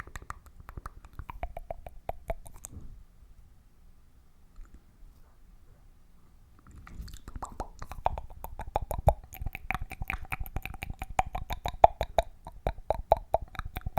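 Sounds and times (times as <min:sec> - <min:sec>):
wet tongue clicks and mouth pops: 0:00.0 - 0:02.8, 0:06.6 - 0:13.9.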